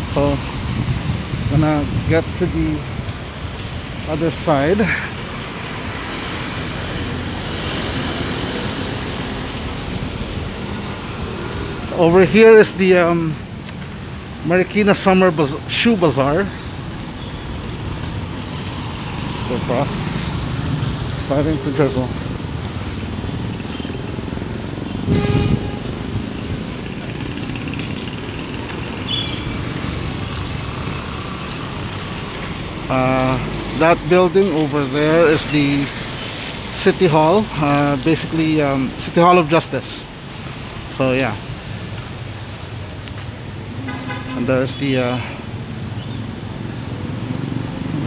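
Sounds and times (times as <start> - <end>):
tyres hissing on wet road: 0.4 - 13.0, 15.5 - 43.0
vehicle horn toot: 24.9 - 26.4, 43.8 - 44.6.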